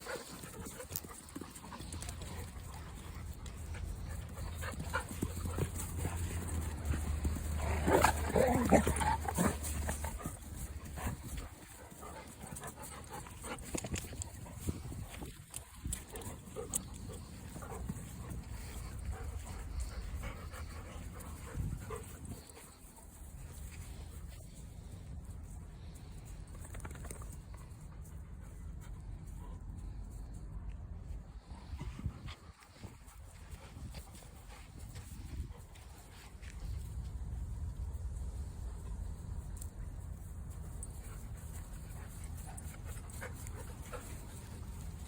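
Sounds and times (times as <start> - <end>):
dog panting: 0.0 - 23.8, 40.8 - 45.0.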